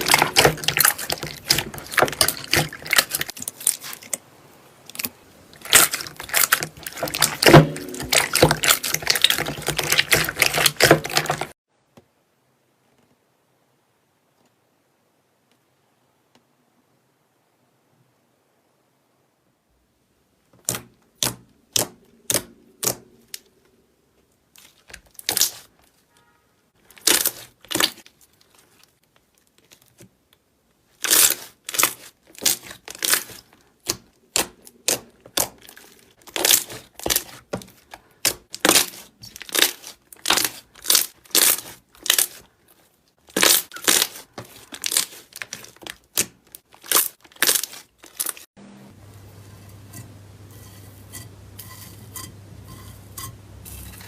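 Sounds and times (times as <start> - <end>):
slime squished by hand: 0.0 - 4.2, 4.8 - 11.5, 26.9 - 30.0, 31.0 - 48.4.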